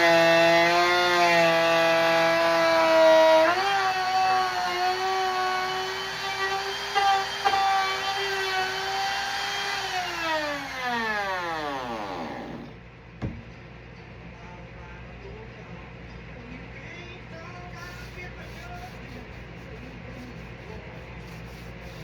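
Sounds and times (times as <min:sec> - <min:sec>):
power tool motor whine: 0:00.0 - 0:12.8
short knocks: 0:13.2 - 0:13.5.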